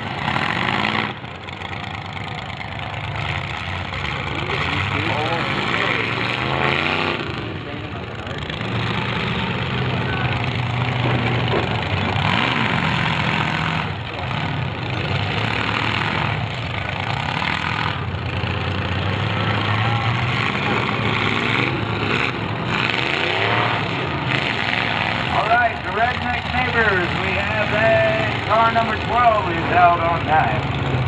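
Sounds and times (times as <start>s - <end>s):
car engines revving: 0.0s - 31.0s.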